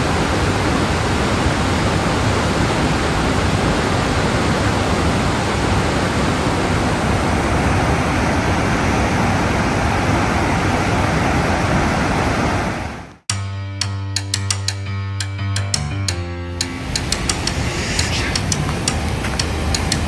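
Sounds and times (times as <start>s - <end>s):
plucked guitar music: 13.3s - 20.0s.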